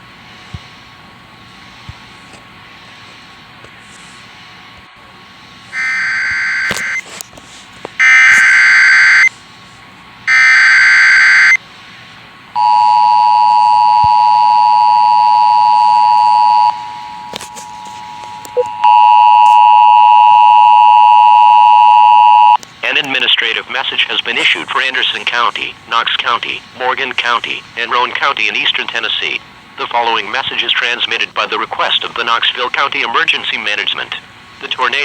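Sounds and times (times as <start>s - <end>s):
screeching data tones: 5.8s - 7.0s, 13.0s - 22.6s
two-tone attention signal: 12.6s - 22.6s.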